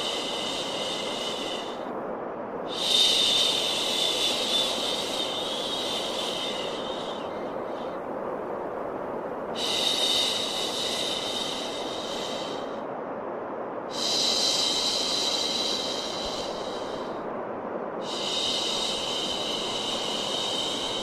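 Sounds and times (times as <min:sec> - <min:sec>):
steady white noise: 0:00.0 - 0:21.0.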